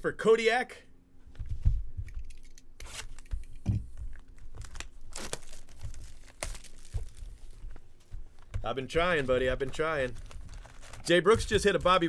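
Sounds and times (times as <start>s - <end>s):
wrapper tearing and crinkling: 4.3s - 7.6s, 9.0s - 12.0s.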